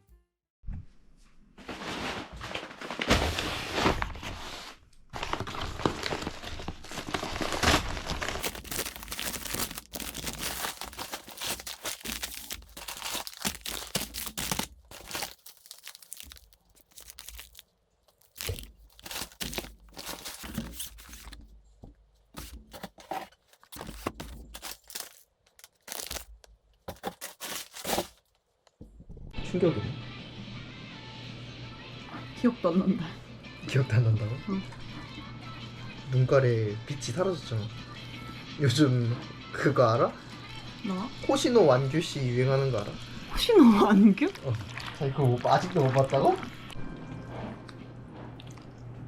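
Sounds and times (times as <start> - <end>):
packaging tearing and crinkling: 5.2 - 21.4, 22.4 - 28.4.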